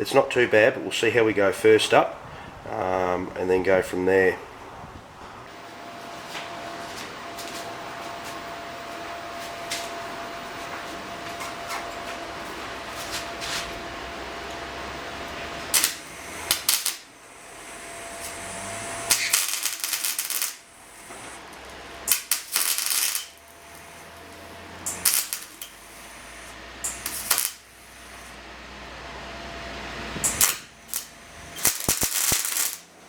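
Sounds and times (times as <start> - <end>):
faint steady hum: 0.0 - 33.0
welder crackling sizzle: 5.5 - 28.4, 29.9 - 33.0.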